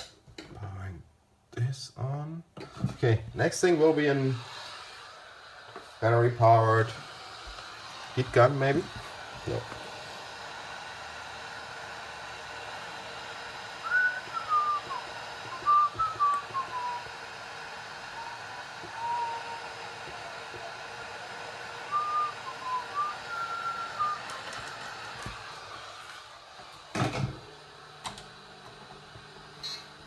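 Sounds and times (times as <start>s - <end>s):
person whistling: 13.8s - 17.4s, 18.0s - 20.9s, 21.9s - 25.1s.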